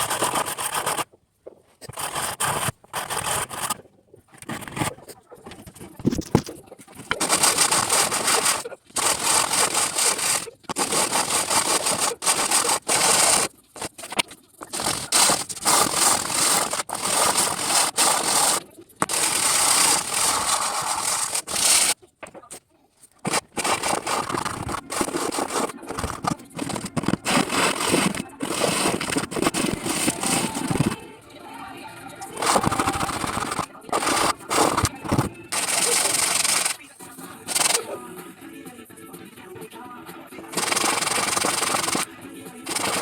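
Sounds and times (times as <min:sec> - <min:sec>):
sanding wood: 0:00.0 - 0:01.0, 0:07.1 - 0:22.0, 0:23.2 - 0:31.0, 0:32.3 - 0:36.8, 0:37.5 - 0:37.9, 0:40.5 - 0:42.1, 0:42.7 - 0:43.0.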